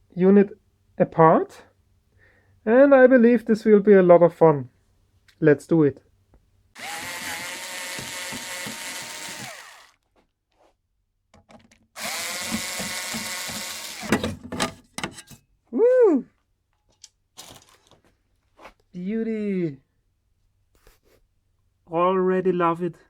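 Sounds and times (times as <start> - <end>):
electric screwdriver whining: 6.8 - 10.0, 12.0 - 14.3.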